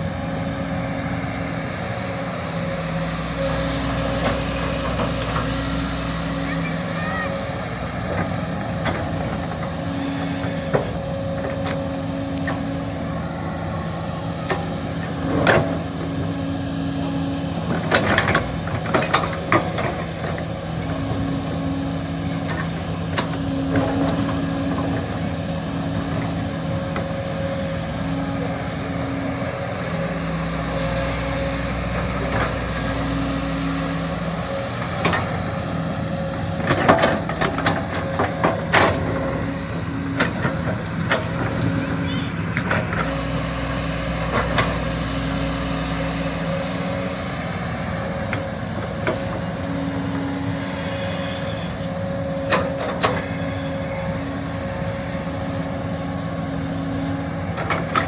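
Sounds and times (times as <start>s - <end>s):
excavator engine hum: 0.0s - 58.0s.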